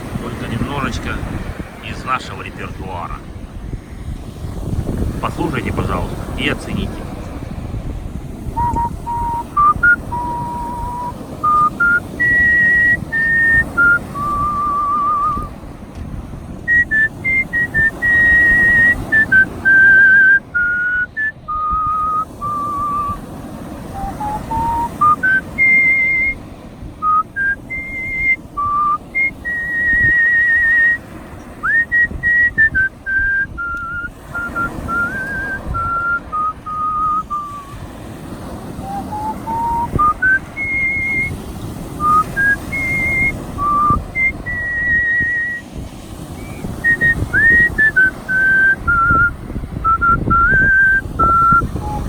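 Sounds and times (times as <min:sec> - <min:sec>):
steady low rush: 0:00.0 - 0:13.3
person whistling a melody: 0:08.6 - 0:15.5, 0:16.7 - 0:23.2, 0:23.9 - 0:26.4, 0:27.0 - 0:31.0, 0:31.6 - 0:37.8, 0:38.8 - 0:41.4, 0:42.0 - 0:45.7, 0:46.3 - 0:52.0.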